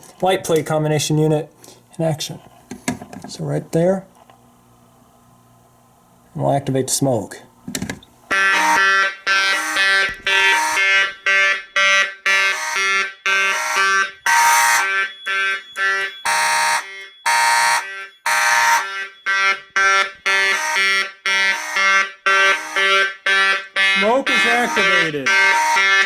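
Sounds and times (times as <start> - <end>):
fire alarm horns blaring: 8.3 - 26.0.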